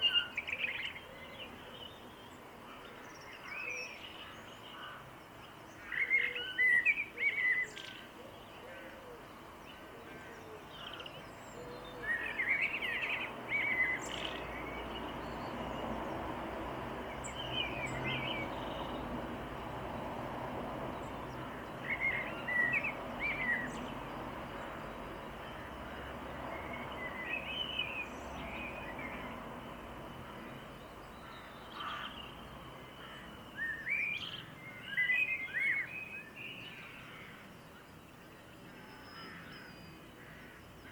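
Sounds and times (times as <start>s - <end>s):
small birds chirping: 0.0s - 40.9s
outdoor background rumble: 10.8s - 33.5s.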